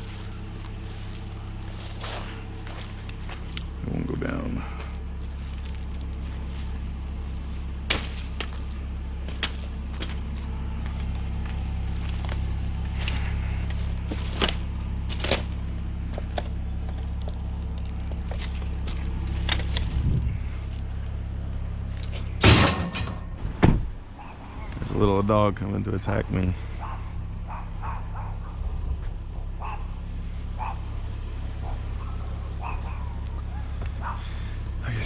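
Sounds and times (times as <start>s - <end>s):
vehicle engine running: 0.0s - 35.0s
sharp knocks and rattles: 22.0s - 23.9s.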